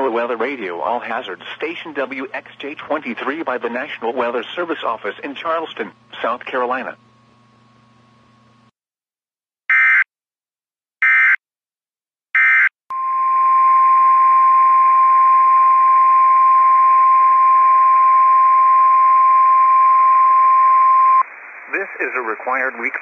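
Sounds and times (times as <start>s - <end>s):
radio hiss: 0.1s - 7.0s, 21.2s - 23.0s.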